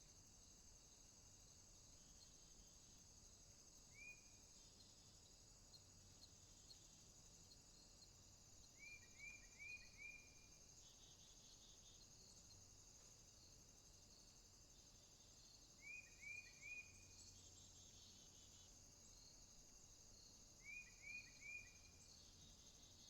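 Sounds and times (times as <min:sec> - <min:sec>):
insects trilling: 0:00.0 - 0:23.0
bird chirping: 0:20.6 - 0:23.0.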